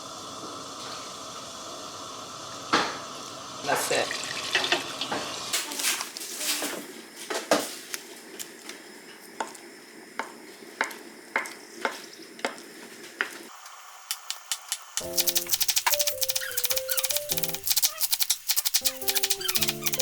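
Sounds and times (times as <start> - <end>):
cooking hiss: 0.0 - 20.0
utensil clicking against pot: 14.1 - 20.0
background music with rattle: 15.0 - 20.0.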